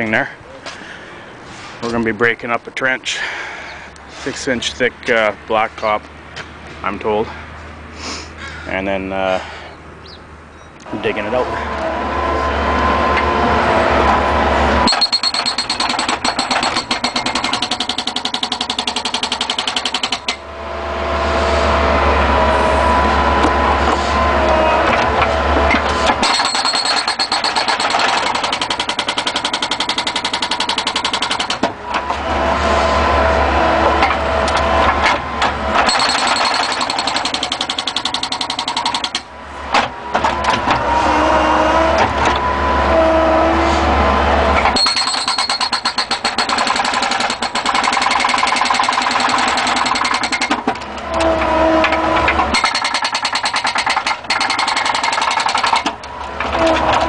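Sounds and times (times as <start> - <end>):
loader engine under load: 10.8 - 57.0
hydraulic whines: 11.1 - 57.0
fast steady rattle: 14.9 - 20.3, 26.2 - 31.6, 35.9 - 39.2, 44.8 - 50.6, 52.6 - 55.9.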